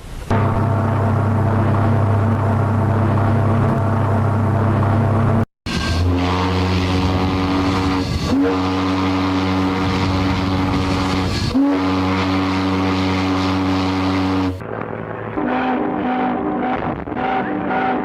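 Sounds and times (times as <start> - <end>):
changing tonal sound: 0.3 - 18.0
deep ship's whistle blasts: 5.7 - 14.6.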